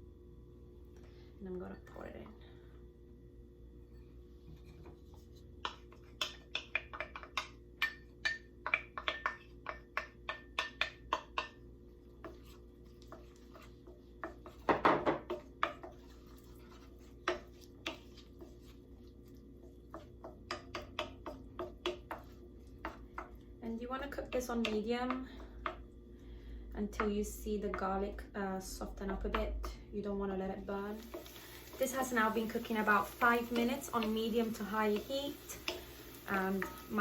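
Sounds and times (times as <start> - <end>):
spoon tapping against pan: 5.6 - 11.6, 19.9 - 22.2, 24.0 - 25.8, 31.0 - 37.0
spoon scraping pan: 12.2 - 23.4, 30.7 - 37.0.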